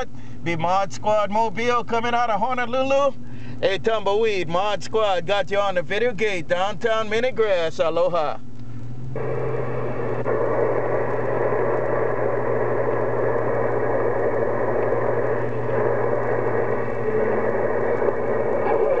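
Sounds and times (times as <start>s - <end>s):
low hum: 0.0s - 19.0s
radio static hiss: 9.1s - 19.0s.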